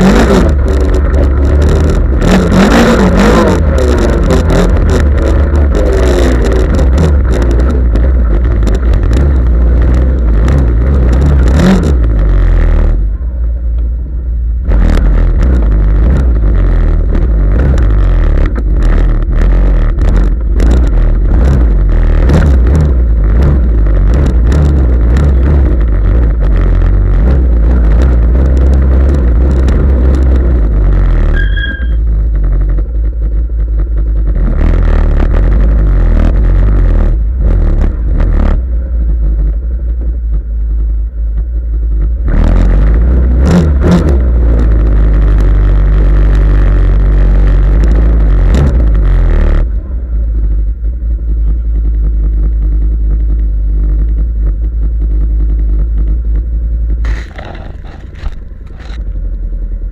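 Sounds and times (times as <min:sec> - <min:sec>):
off-road vehicle engine revving: 0:00.0 - 0:59.9
sharp clicks and knocks: 0:03.5 - 0:12.0, 0:17.1 - 0:22.6, 0:57.0 - 0:59.4.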